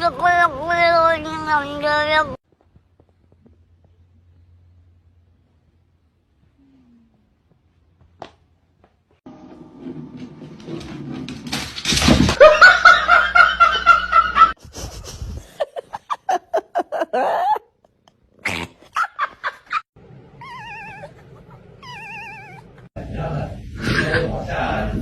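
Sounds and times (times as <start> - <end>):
pet animal calls: 20.4 - 22.9.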